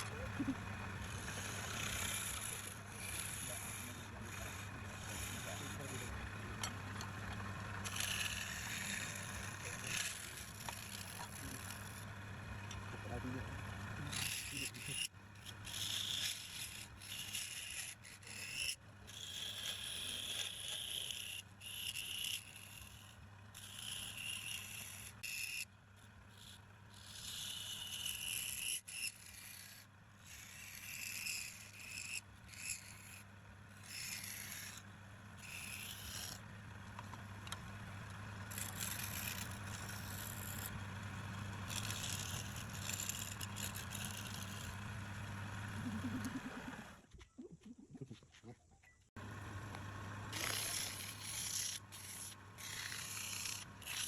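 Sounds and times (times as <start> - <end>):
lathe humming: 0.0 - 18.2, 31.1 - 47.0, 49.2 - 54.0
tool scraping spinning wood: 0.0 - 48.4, 49.2 - 54.0.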